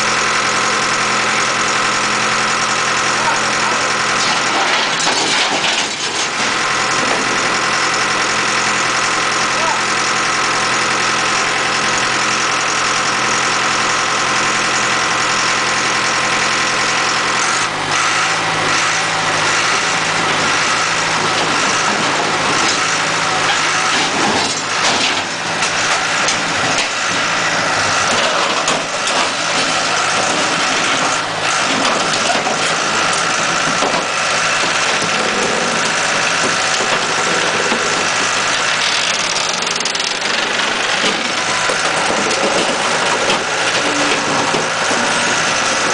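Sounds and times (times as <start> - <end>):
baler engine running: 0.0 - 45.9
scrap steel clanking and crunching: 2.9 - 9.7, 16.6 - 45.9.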